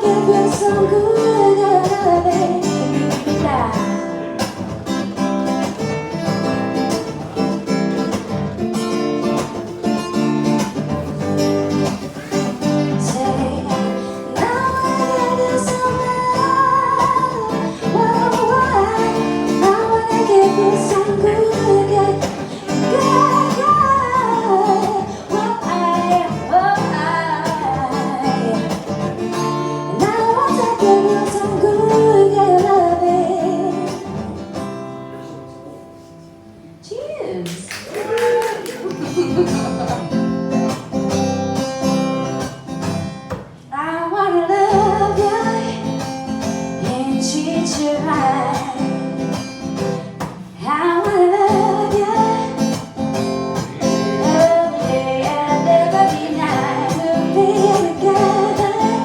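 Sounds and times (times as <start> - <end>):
person singing: 0.0 - 3.9, 12.2 - 28.9, 53.6 - 59.0
acoustic guitar strumming: 0.0 - 36.8, 38.6 - 59.0.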